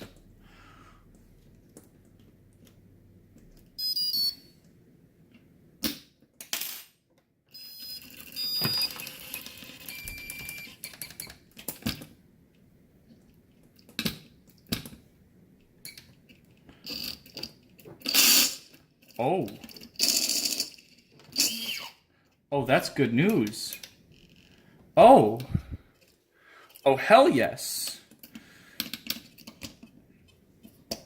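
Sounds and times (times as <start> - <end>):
electronic beep tones from motor: 3.8 - 4.5, 7.5 - 10.8.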